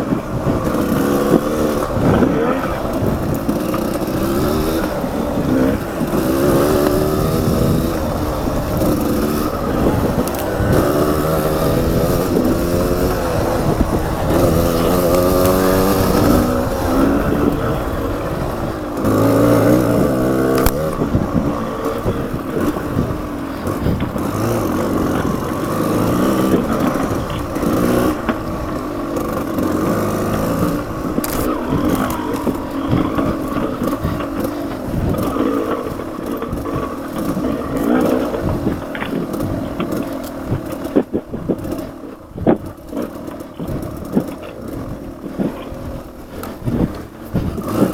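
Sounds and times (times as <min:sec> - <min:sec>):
motorcycle engine revving: 0:00.0 - 0:47.9
rattling from rough ground: 0:00.0 - 0:47.9.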